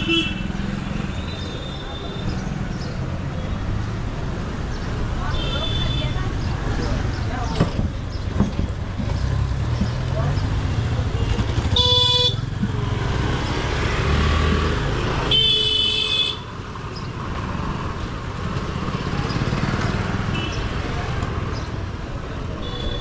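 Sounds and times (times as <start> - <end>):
vehicle horns honking: 0.0 - 0.5, 5.3 - 6.3, 11.7 - 12.4, 15.2 - 16.5, 22.6 - 23.0
vehicle engines running: 0.0 - 15.7, 16.6 - 22.6.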